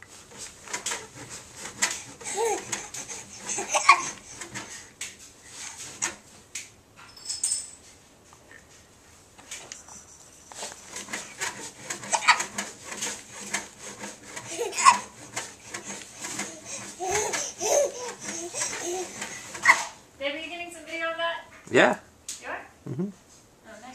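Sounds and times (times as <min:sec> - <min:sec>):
baby bouncer spring creaking and clicking: 0:10.8 - 0:19.8.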